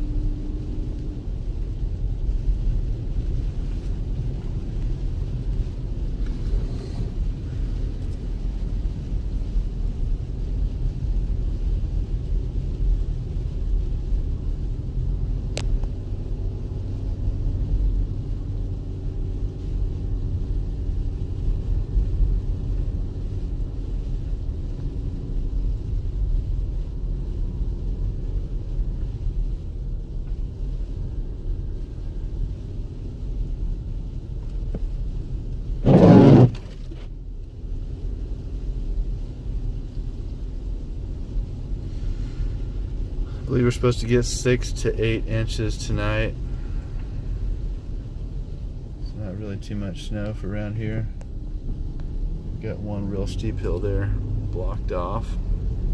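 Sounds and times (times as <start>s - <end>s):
car engine and tyre noise: 0.0s - 55.9s
loud short burst of noise: 35.8s - 36.9s.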